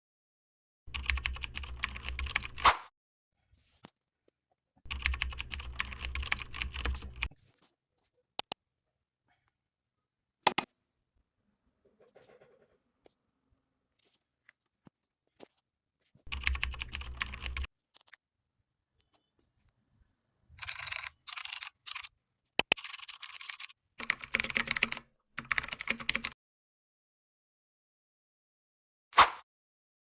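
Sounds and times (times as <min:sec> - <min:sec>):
keyboard typing clicks: 0:00.9 - 0:02.7, 0:04.9 - 0:07.3, 0:10.5 - 0:10.7, 0:16.3 - 0:17.7, 0:20.6 - 0:26.4
single sharp click: 0:29.2 - 0:29.4.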